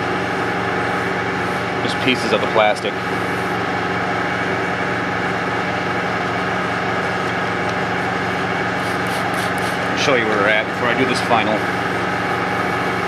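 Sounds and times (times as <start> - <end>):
palm sander running: 0.0 - 13.0.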